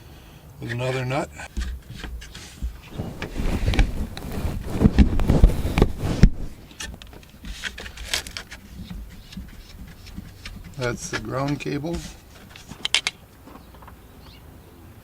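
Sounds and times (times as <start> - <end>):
tools rubbing and knocking: 1.4 - 13.2.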